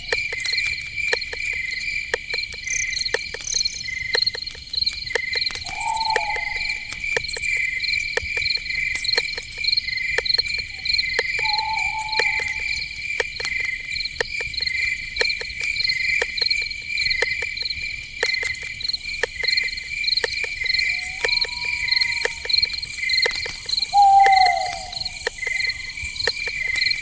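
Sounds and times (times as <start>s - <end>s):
crickets chirping: 0.0s - 27.0s
sharp clicks: 0.1s - 27.0s
short whistled calls: 5.6s - 7.1s, 11.4s - 13.0s, 20.4s - 25.8s.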